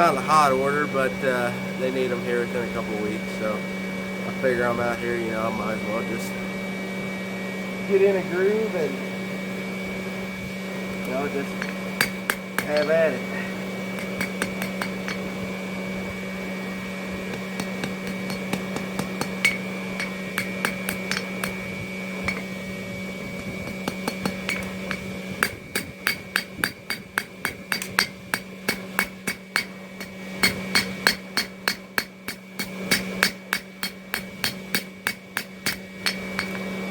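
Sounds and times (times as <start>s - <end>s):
steady hum: 0.0s - 36.9s
hammer striking steel on anvil: 11.4s - 13.2s, 14.0s - 15.3s, 17.3s - 22.5s, 23.8s - 36.7s.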